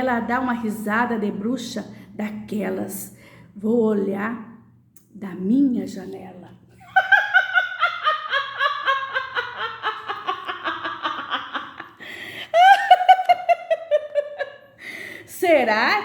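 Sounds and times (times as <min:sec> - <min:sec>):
high-pitched witch's cackle: 0:06.8 - 0:14.7.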